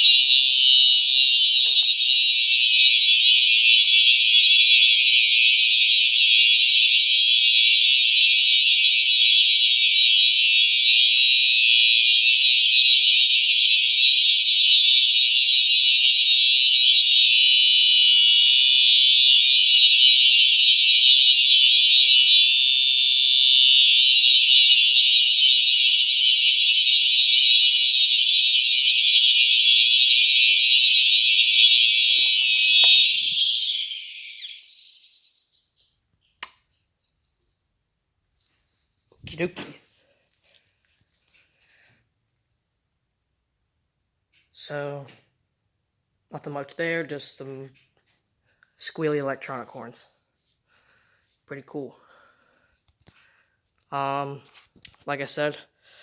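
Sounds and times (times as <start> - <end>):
electronic fire alarm horns: 0.0 - 35.8.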